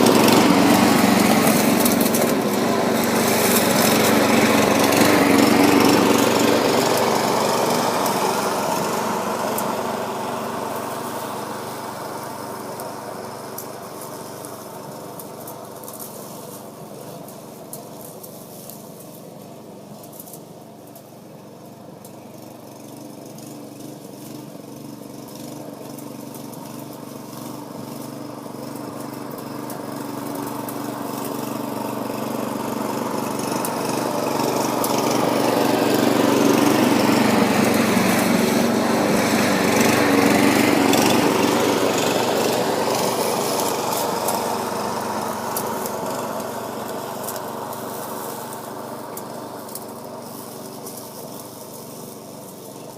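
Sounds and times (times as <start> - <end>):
lawnmower cutting grass: 0.0 - 52.9.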